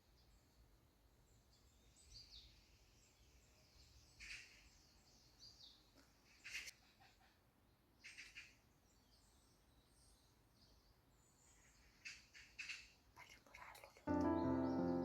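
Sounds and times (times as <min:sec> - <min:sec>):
faint bird chirping: 0:00.0 - 0:15.0.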